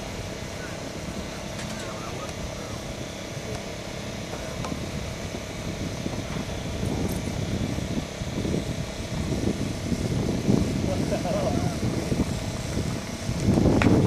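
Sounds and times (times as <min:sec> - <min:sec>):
model airplane motor and propeller: 0:00.0 - 0:14.0.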